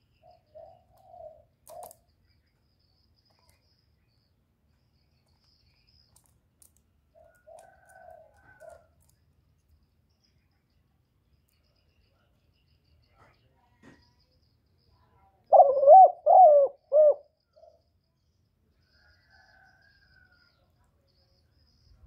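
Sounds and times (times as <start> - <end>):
dove cooing: 0.2 - 2.0, 15.5 - 17.8
faint high insect trill: 14.1 - 22.0.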